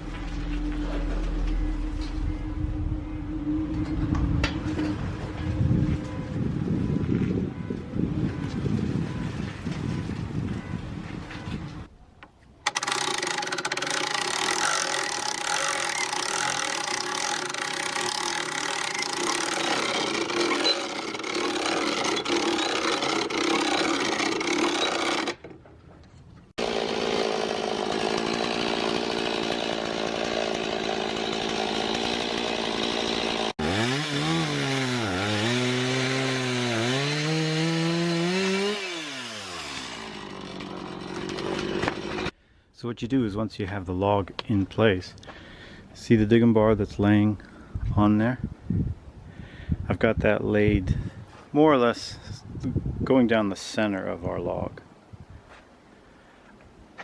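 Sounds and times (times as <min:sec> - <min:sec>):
gas-engine saw cutting wood: 0:12.7 - 0:25.4, 0:26.6 - 0:42.4.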